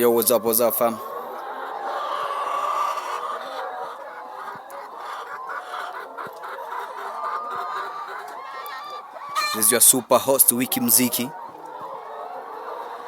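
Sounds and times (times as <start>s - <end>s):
hens clucking: 0.0s - 13.0s.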